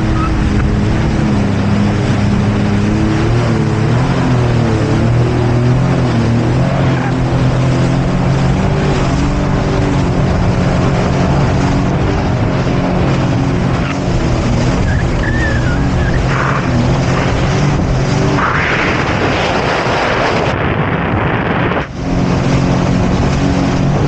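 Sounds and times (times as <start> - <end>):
jet ski engine running: 0.0 - 24.0
water and wind rushing: 0.0 - 24.0.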